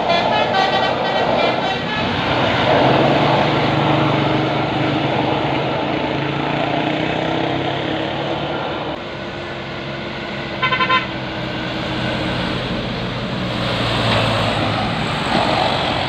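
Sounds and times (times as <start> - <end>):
musical horn: 0.0 - 2.4, 10.6 - 11.2
heavy diesel engine labouring: 0.0 - 16.0.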